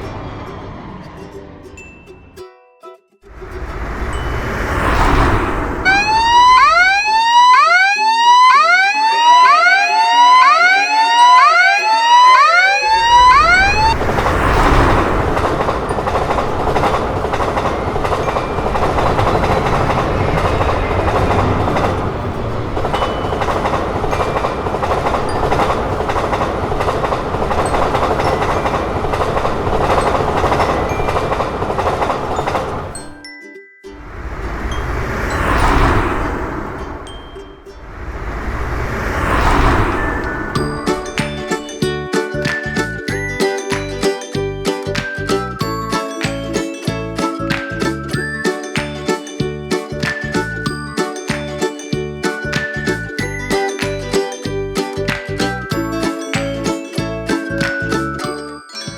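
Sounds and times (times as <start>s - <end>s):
train rumble and rail noise: 0.0s - 2.4s, 3.3s - 33.3s, 33.9s - 58.6s
low held tone: 3.3s - 16.0s
level crossing electronic whoop: 5.8s - 14.0s.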